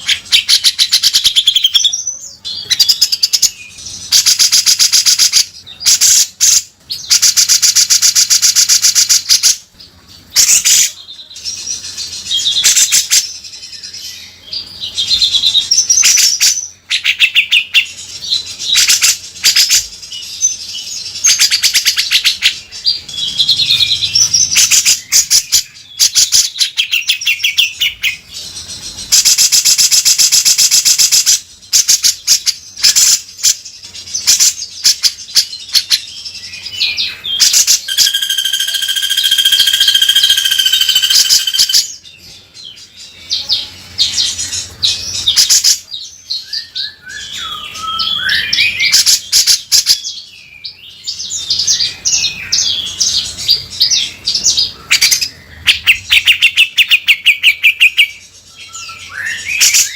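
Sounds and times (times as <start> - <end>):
bird whistled trills: 34.2 - 42.0, 45.1 - 50.6, 51.5 - 59.9
bird harsh rasping rattles: 37.8 - 41.8.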